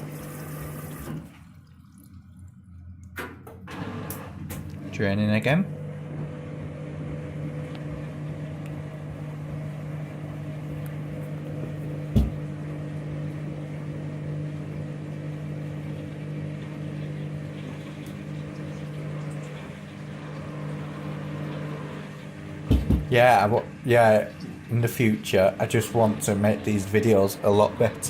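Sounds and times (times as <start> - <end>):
washing machine drain pump humming: 0.0 - 28.0
short thump: 12.1 - 12.4, 22.7 - 23.1.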